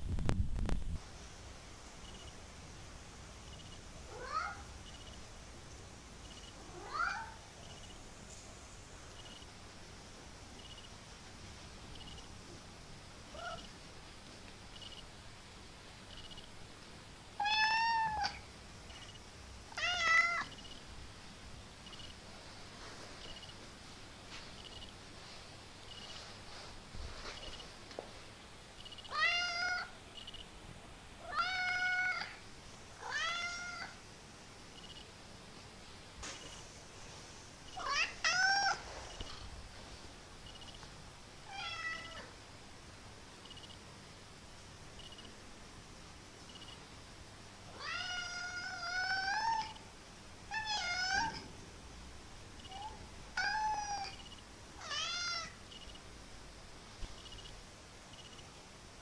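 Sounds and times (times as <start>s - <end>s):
kitten meowing: 17.4s - 18.4s, 19.8s - 20.5s, 33.0s - 34.0s, 37.8s - 38.8s, 47.8s - 49.8s, 50.5s - 51.4s, 54.8s - 55.6s.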